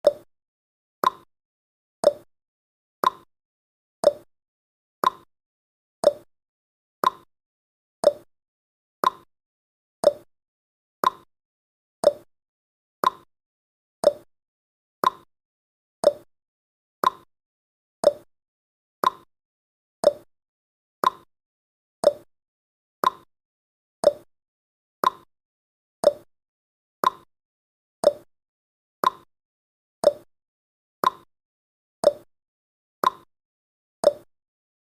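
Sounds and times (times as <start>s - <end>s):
timer ticks: 0.0s - 0.3s, 1.0s - 1.3s, 2.0s - 2.3s, 3.0s - 3.3s, 4.0s - 4.3s, 5.0s - 5.3s, 6.0s - 6.3s, 7.0s - 7.3s, 8.0s - 8.3s, 9.0s - 9.3s, 10.0s - 10.3s, 11.0s - 11.3s, 12.0s - 12.3s, 13.0s - 13.3s, 14.0s - 14.3s, 15.0s - 15.3s, 16.0s - 16.3s, 17.0s - 17.3s, 18.0s - 18.3s, 19.0s - 19.3s, 20.0s - 20.3s, 21.0s - 21.3s, 22.0s - 22.3s, 23.0s - 23.3s, 24.0s - 24.3s, 25.0s - 25.3s, 26.0s - 26.3s, 27.0s - 27.3s, 28.0s - 28.3s, 29.0s - 29.3s, 30.0s - 30.3s, 31.0s - 31.3s, 32.0s - 32.3s, 33.0s - 33.3s, 34.0s - 34.3s.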